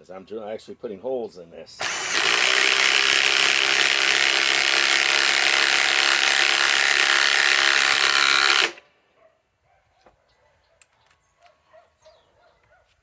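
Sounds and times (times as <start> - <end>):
impact wrench hammering: 1.8 - 8.8.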